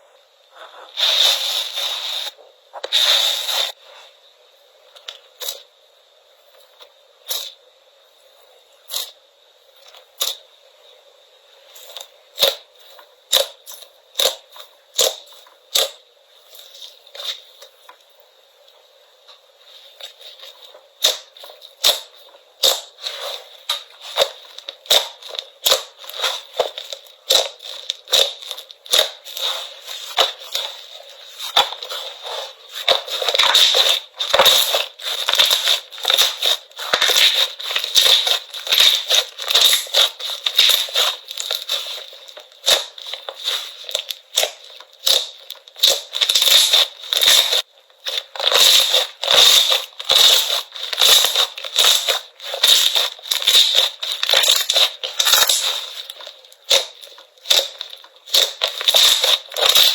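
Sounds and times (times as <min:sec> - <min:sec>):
slime popping and crackling: 0:11.8 - 0:17.9, 0:20.0 - 0:59.9.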